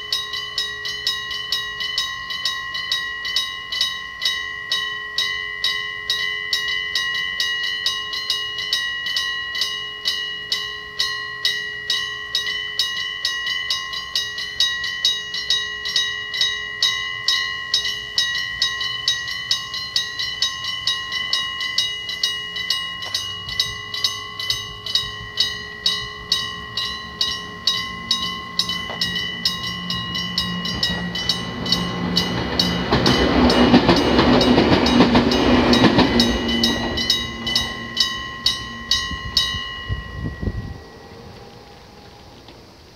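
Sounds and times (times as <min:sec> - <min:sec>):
level crossing bell ringing: 0:00.0 - 0:42.9
train rumbling past: 0:12.0 - 0:42.9.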